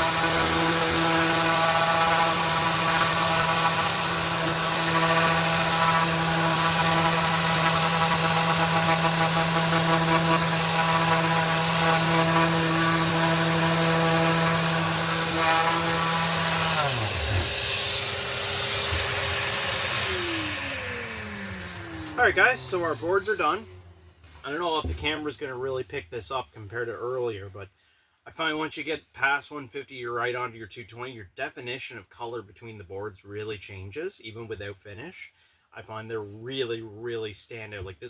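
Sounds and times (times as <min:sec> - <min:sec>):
sander motor winding down: 0:00.0 - 0:25.2
orbital sander on wood: 0:00.0 - 0:25.4.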